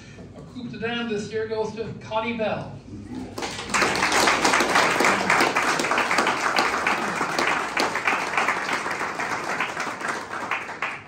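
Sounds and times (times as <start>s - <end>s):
audience applauding: 3.2s - 11.0s.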